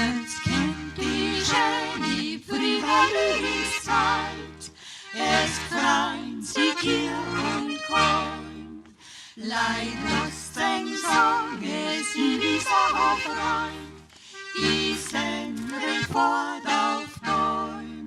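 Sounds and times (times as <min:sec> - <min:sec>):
accordion folk music: 0:00.0 - 0:18.0.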